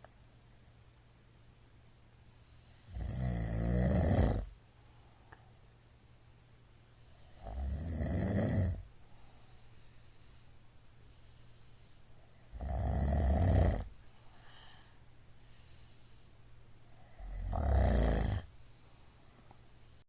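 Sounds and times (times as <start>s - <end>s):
man snoring loudly: 2.8s - 4.5s, 7.3s - 8.8s, 12.5s - 13.9s, 17.1s - 18.5s
soft breathing: 4.7s - 5.7s, 6.9s - 7.6s, 8.8s - 12.6s, 13.9s - 17.7s, 18.3s - 20.0s.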